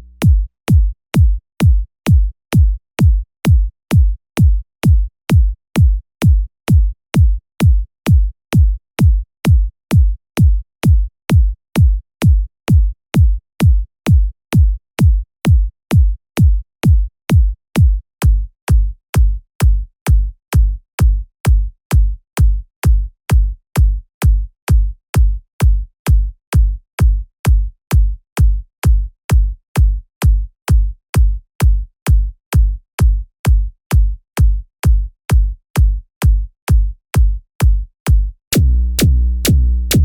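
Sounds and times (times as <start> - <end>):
electronic kick drum thumps: 0.0 - 5.1, 38.6 - 40.0.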